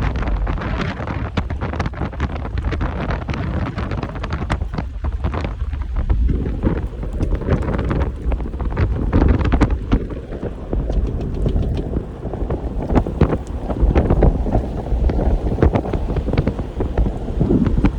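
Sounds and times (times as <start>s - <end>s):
short crackles and taps: 0.0s - 17.9s
storm wind buffeting microphone: 0.0s - 17.9s.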